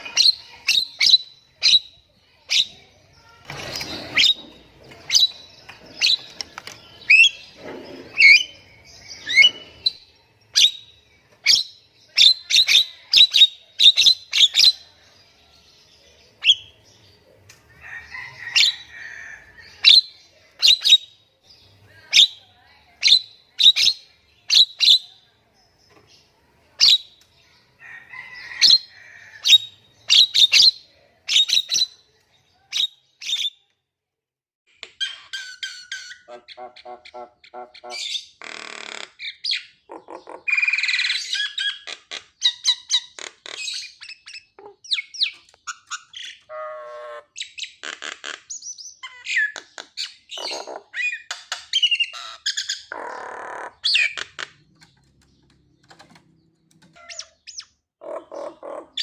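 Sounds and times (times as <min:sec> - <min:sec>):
harsh rasping bird calls: 0:00.0 - 0:10.8, 0:34.8 - 0:59.0.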